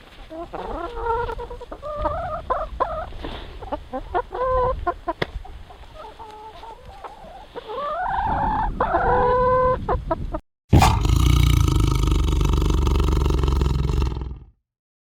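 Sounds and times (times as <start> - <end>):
chickens clucking: 0.2 - 10.3
animal roaring: 10.7 - 14.5.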